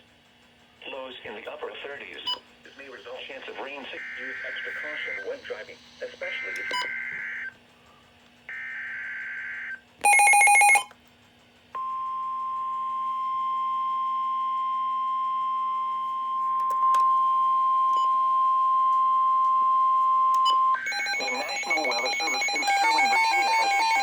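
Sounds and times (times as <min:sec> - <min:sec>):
long steady alarm beep: 0:03.8 - 0:05.6, 0:06.2 - 0:07.6, 0:08.5 - 0:10.9, 0:11.8 - 0:24.0
buzzy data tones: 0:20.5 - 0:24.0.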